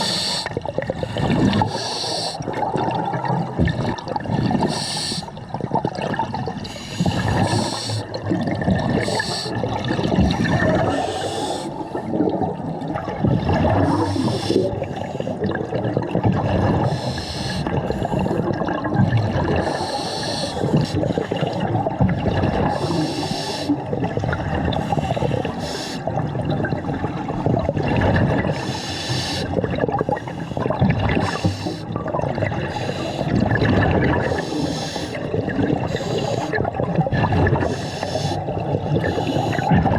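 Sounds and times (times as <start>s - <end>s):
regulator breathing underwater: 0.0s - 2.8s, 3.7s - 5.6s, 6.5s - 12.4s, 13.5s - 15.7s, 16.4s - 21.9s, 22.6s - 24.0s, 24.6s - 26.3s, 28.4s - 36.7s, 37.4s - 39.9s
exhaled bubbles gurgling: 0.0s - 39.9s.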